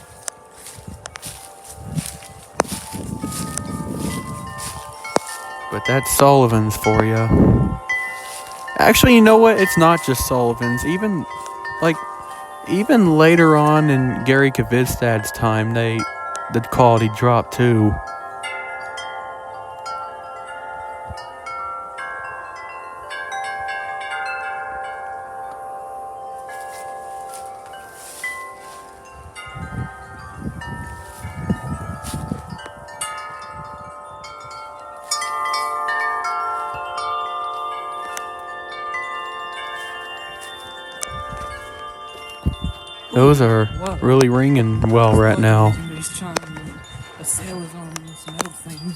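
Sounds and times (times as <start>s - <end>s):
wind rumble on microphone: 0.0s - 18.1s, 28.0s - 38.2s, 41.0s - 48.9s
metal wind chimes ringing: 0.0s - 48.9s.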